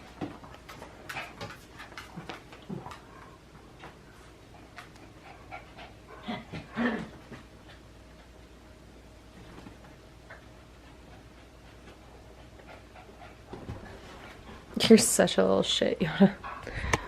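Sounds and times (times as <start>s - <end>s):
dog panting and snuffling: 0.2s - 8.4s, 10.3s - 14.9s.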